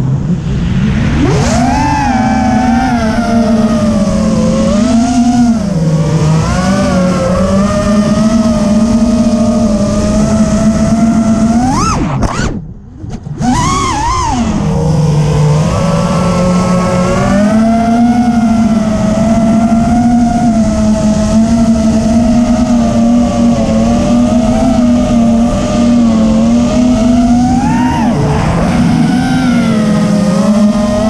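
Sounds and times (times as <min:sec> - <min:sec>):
quadcopter motors buzzing: 0:01.1 - 0:12.6, 0:13.3 - 0:31.0.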